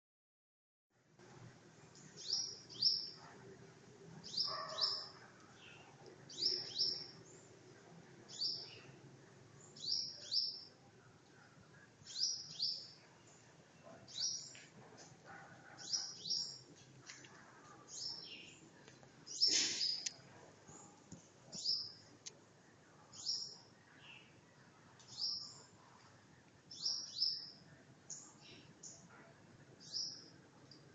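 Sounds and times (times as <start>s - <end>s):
bird chirping: 1.9s - 3.4s, 4.2s - 7.6s, 8.2s - 9.0s, 9.6s - 10.8s, 12.0s - 14.6s, 15.2s - 22.0s, 23.1s - 24.4s, 25.0s - 25.8s, 26.7s - 29.2s, 29.8s - 30.8s.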